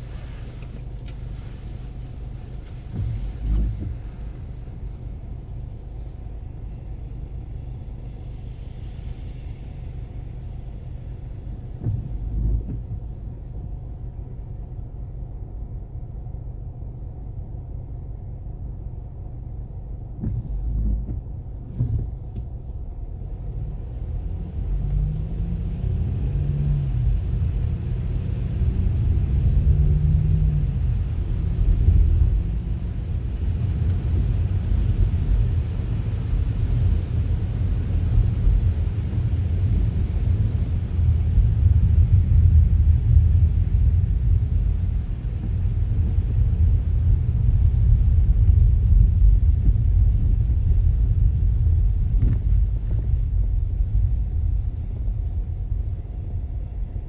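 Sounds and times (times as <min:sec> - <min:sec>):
car engine and tyres rumbling: 0:00.0 - 0:57.0
dull thumps: 0:49.1 - 0:54.0.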